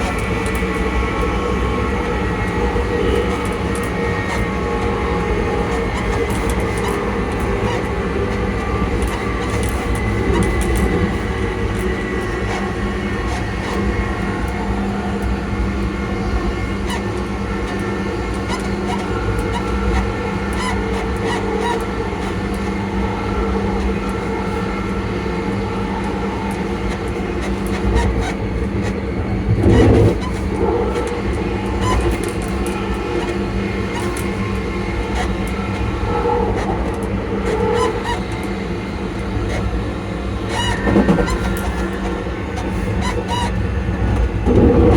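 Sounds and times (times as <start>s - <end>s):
electric train motor whine: 0.0s - 44.9s
wheels rumbling on rails: 0.0s - 44.9s.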